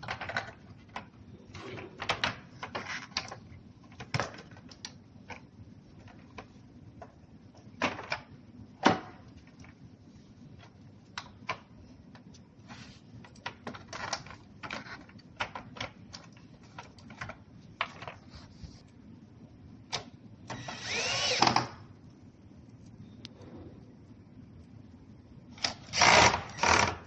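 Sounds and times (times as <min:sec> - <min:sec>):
power drill whining: 0:20.5 - 0:21.7, 0:25.9 - 0:27.0.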